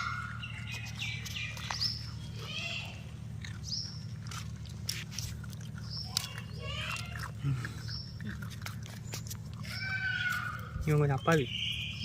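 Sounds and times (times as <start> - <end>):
puppies whining and squealing: 0.0 - 5.0, 5.6 - 12.0.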